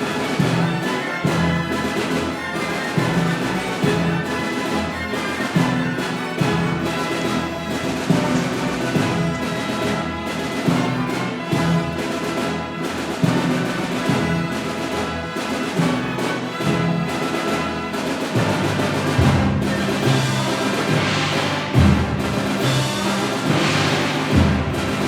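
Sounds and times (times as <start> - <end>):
symphony orchestra playing: 0.0 - 25.0
timpani strokes: 0.0 - 25.0.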